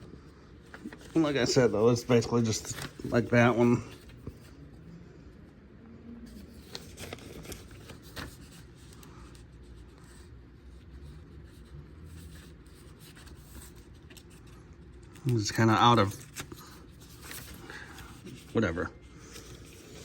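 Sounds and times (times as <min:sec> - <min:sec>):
soft handling rustling: 0:00.0 - 0:04.8
low room hum: 0:00.0 - 0:20.0.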